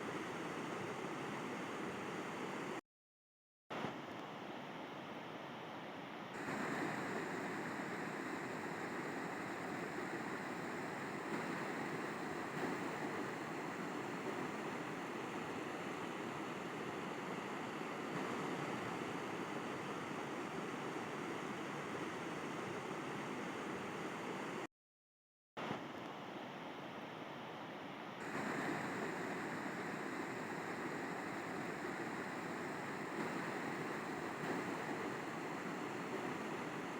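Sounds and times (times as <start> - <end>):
river water rushing: 6.4 - 19.6, 28.2 - 36.9.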